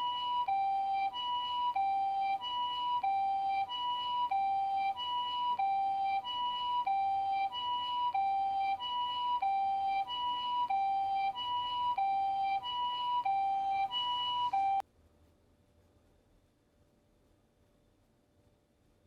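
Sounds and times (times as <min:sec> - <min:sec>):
two-tone ambulance siren: 0:00.0 - 0:14.8
faint hum: 0:00.0 - 0:19.0.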